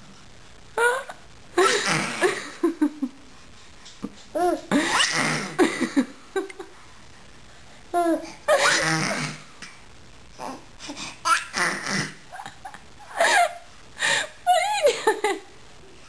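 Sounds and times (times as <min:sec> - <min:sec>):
baby laughing: 0:11.2 - 0:13.6.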